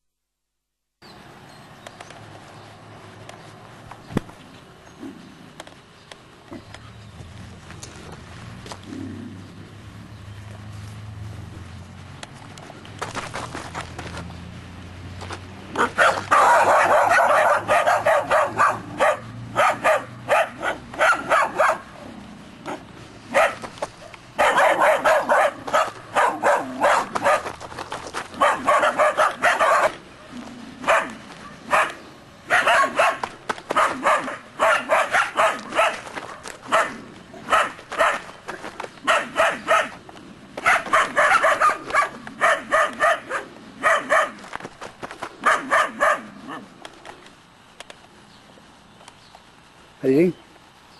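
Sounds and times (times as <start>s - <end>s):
puppies barking: 15.7s - 40.0s, 40.6s - 44.5s, 45.4s - 46.7s.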